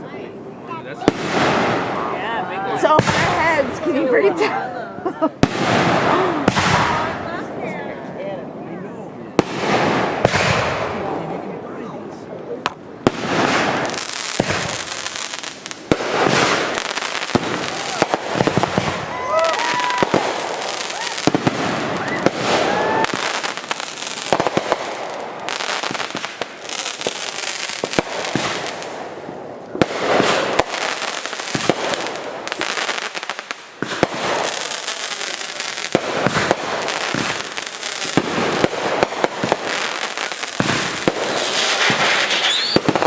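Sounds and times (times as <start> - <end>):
fireworks crackling: 0.6 - 7.8, 9.4 - 11.4, 12.2 - 43.0
fireworks pops and bursts: 1.0 - 2.0, 3.0 - 4.2, 5.4 - 7.2, 9.4 - 11.0, 12.6 - 43.0
rising firework whistles: 13.3 - 24.1, 39.8 - 43.0.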